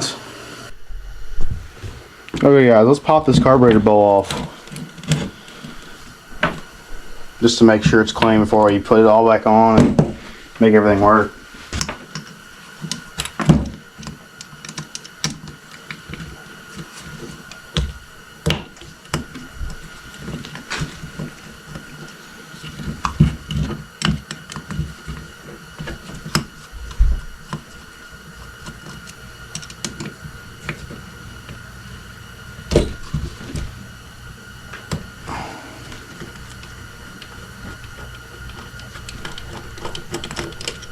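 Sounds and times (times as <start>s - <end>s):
heavier knocks: 9.7s - 10.2s
metal parts clicking and clattering: 38.4s - 40.9s.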